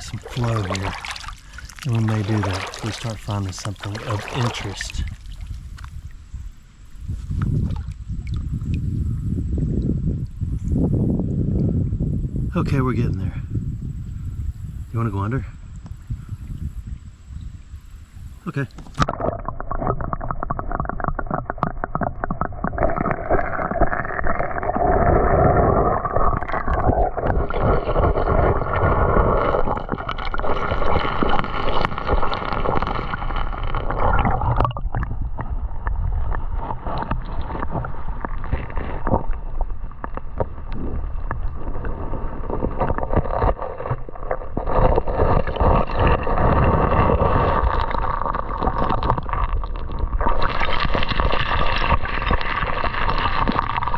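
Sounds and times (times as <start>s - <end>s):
gravel stirred in water: 0.0s - 6.0s, 18.5s - 53.9s
small splashes and knocks: 0.0s - 6.2s, 7.1s - 8.8s
creek water sloshing and gurgling: 0.0s - 10.9s, 14.9s - 53.9s.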